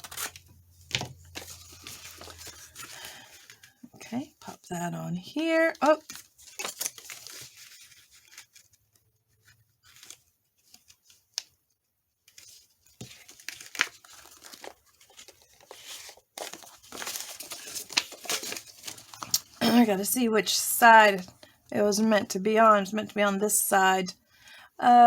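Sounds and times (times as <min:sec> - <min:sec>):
paper rustling and crinkling: 0:00.0 - 0:03.9, 0:05.8 - 0:19.6.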